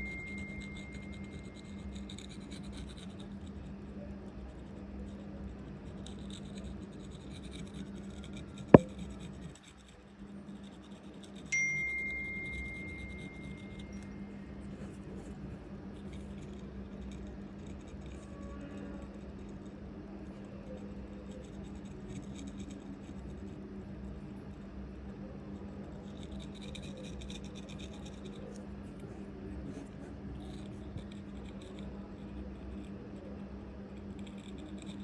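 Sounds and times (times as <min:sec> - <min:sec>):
ringing chime-like tone: 0:00.0 - 0:01.6, 0:11.5 - 0:14.5
steady hum: 0:00.0 - 0:35.0.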